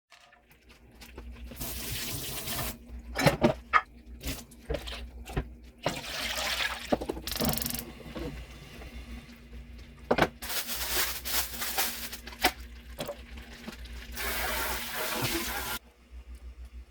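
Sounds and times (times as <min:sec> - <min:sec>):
kitchen tap running: 0:00.2 - 0:15.8
dishes clattering: 0:03.1 - 0:03.9.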